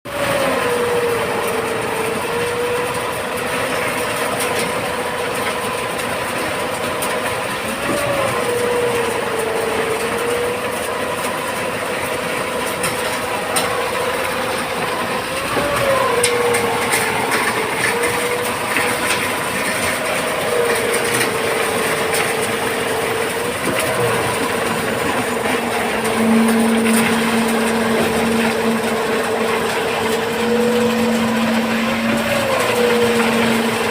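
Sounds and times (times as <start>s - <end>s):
construction machine hum: 0.0s - 33.9s.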